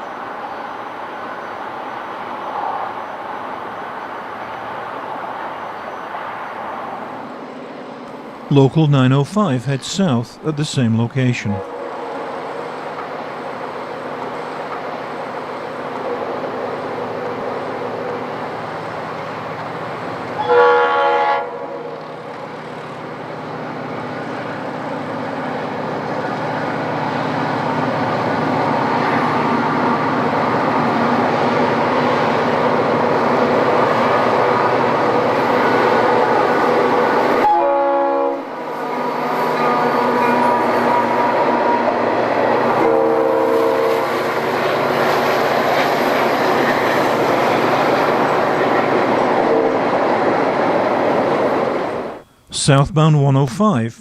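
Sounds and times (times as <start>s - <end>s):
train engine and wheel noise: 0.0s - 52.4s
train air horn: 11.6s - 12.4s, 20.4s - 22.0s, 37.4s - 38.5s, 42.7s - 44.2s.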